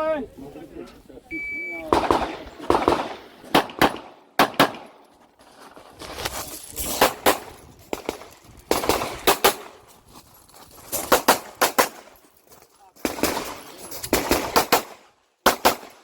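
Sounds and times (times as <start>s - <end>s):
pistol gunshots: 1.9s - 5.0s, 7.0s - 9.8s, 11.0s - 12.1s, 13.0s - 16.0s.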